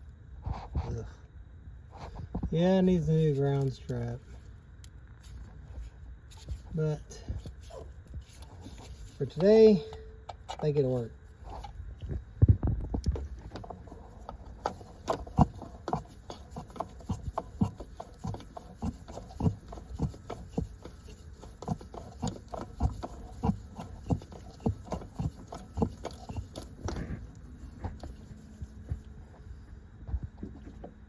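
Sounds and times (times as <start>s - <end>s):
dull knocks and clicks: 12.4s - 29.1s.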